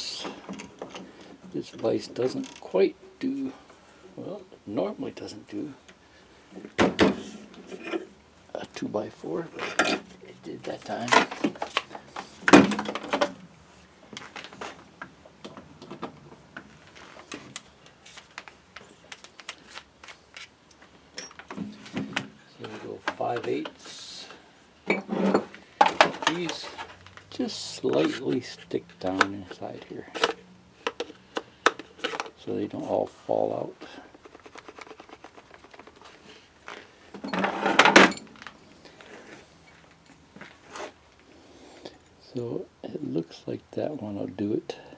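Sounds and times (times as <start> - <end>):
hard objects clicking and tapping: 30.2 - 32.4.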